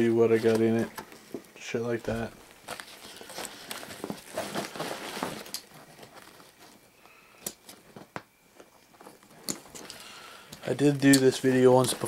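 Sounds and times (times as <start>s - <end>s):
nylon backpack rustling: 2.5s - 6.9s.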